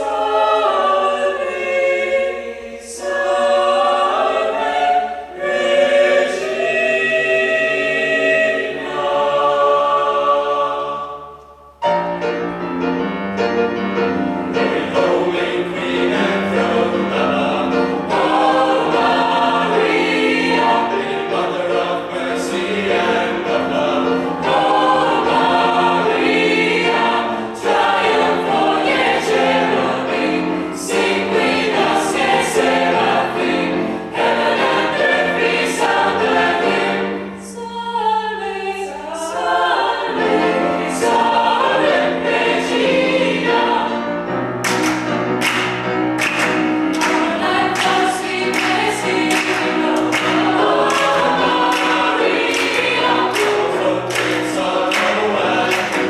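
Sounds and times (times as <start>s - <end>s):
choir singing a gospel hymn: 0.0s - 56.0s.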